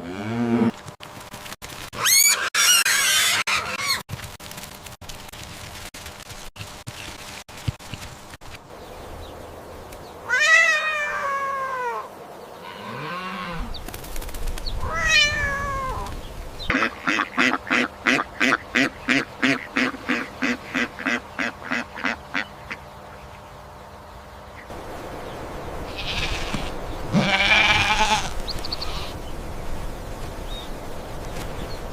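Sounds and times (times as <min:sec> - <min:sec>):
cat meowing: 0:14.8 - 0:16.1.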